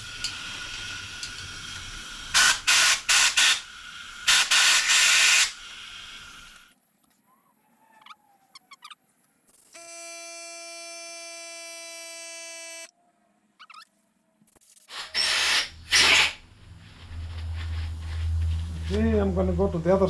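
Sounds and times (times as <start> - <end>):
power drill whirring: 1.2 - 6.6, 9.7 - 12.9, 14.9 - 16.4
aerosol spray blasts: 2.3 - 6.5, 14.9 - 16.4.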